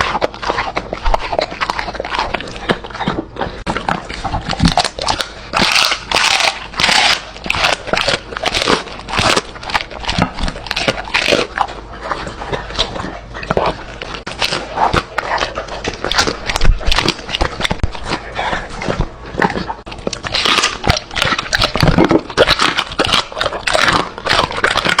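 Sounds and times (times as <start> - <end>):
dog chewing food: 0.0 - 25.0.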